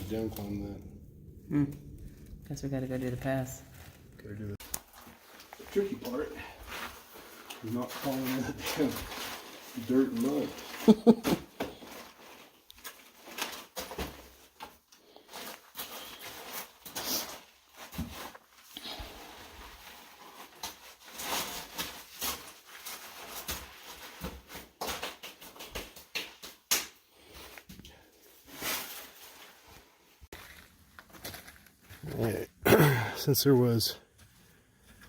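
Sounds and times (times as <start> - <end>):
footsteps crunching on mud: 30.3 - 32.4.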